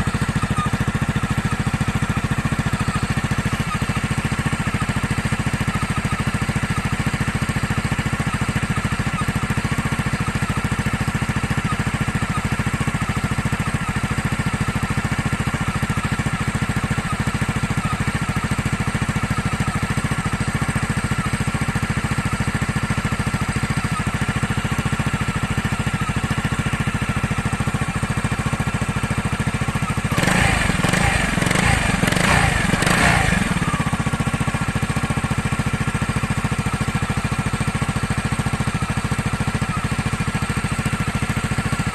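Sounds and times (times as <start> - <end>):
car engine idling: 15.2 - 41.9.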